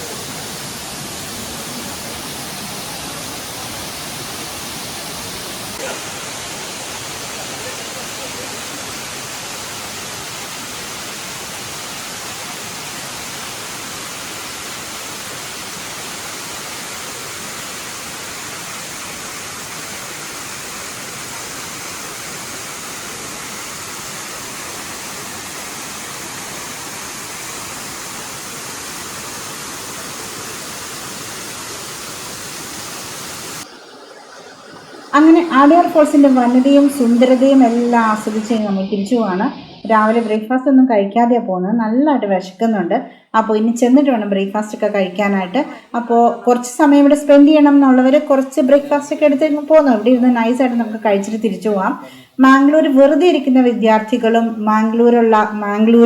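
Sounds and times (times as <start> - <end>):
waterfall rushing onto rocks: 0.0 - 38.6.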